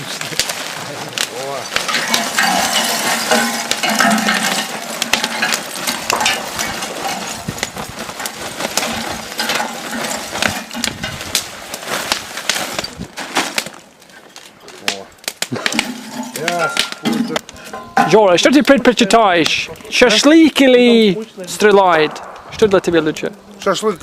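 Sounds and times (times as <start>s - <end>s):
charcoal clinking into a grill: 1.2s - 13.7s, 14.9s - 20.9s.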